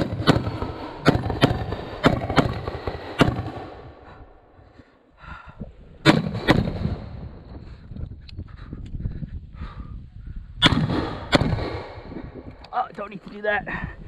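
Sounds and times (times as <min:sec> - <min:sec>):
carbine gunshots: 0:00.0 - 0:03.9, 0:06.0 - 0:07.2, 0:10.6 - 0:12.0.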